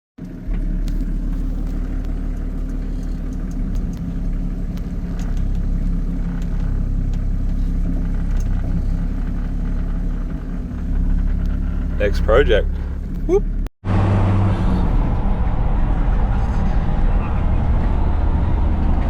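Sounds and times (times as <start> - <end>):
road rumble: 0.2 - 19.0
vehicle engine hum: 0.2 - 19.0
light clicks and rattles: 0.6 - 9.4.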